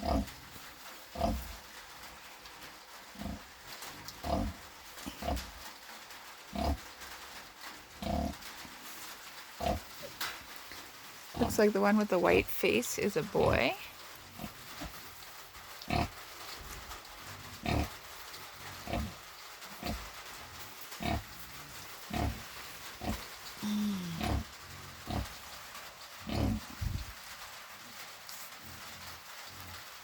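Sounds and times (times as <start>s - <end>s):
sow grunting: 23.0s - 25.3s
pig grunt dropping in pitch: 23.6s - 24.4s.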